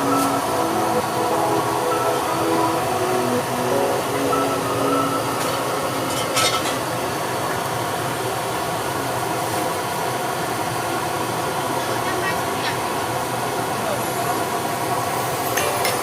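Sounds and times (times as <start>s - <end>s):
street food background noise: 2.5s - 16.0s.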